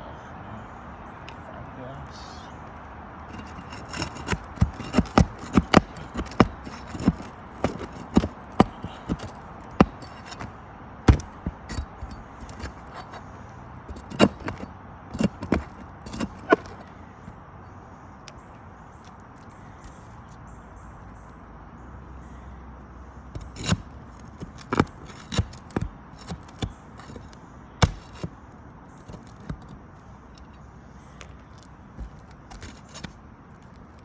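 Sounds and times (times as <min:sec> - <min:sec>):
nails being pried out: 0:03.3 - 0:17.0, 0:23.4 - 0:28.4, 0:31.2 - 0:33.7.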